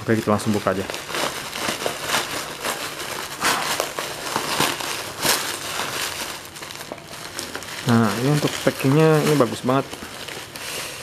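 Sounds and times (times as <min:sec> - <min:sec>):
packaging tearing and crinkling: 0:00.0 - 0:11.0.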